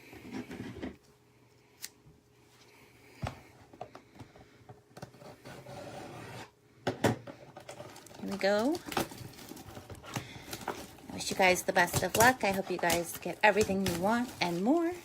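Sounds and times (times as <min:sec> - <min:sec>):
knife scraping plastic wrap: 0:07.7 - 0:15.0.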